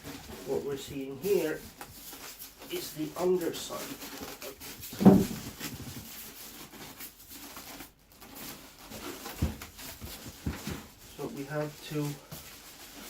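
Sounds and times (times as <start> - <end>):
foam packing rustling and scraping: 0.0 - 13.0
computer case thump: 5.0 - 5.4.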